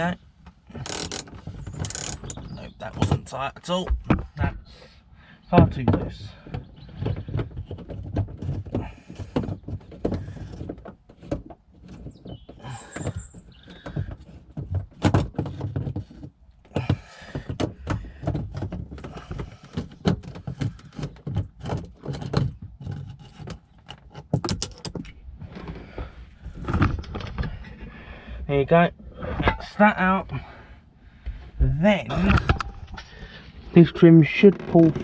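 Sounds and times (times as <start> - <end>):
hand tools clicking on plastic trim: 0.7 - 2.5.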